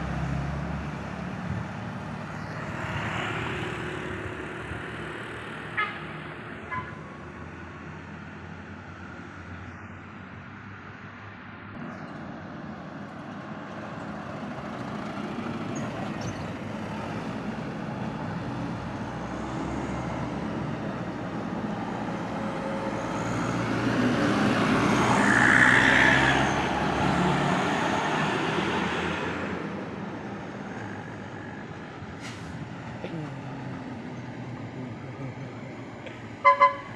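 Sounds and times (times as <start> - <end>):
heavy vehicle engine passing: 11.8 - 36.9.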